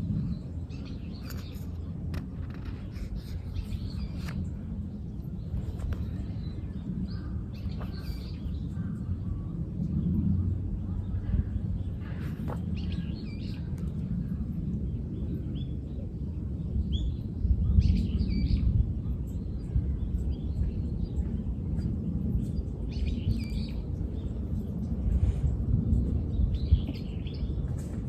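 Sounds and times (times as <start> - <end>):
low outdoor rumble: 0.0 - 28.0
birds chirping and singing: 0.3 - 10.2.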